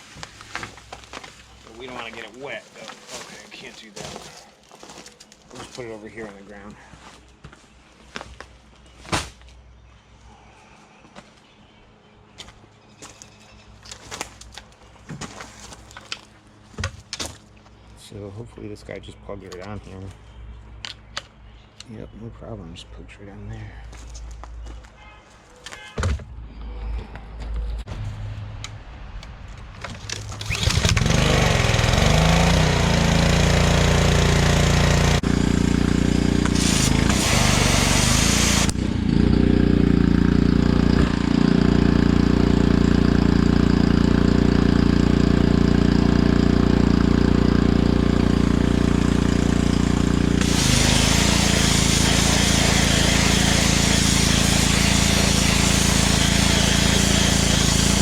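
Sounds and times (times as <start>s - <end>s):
pressure washer engine running: 30.4s - 58.0s
water spray hissing: 36.4s - 38.7s, 50.4s - 58.0s.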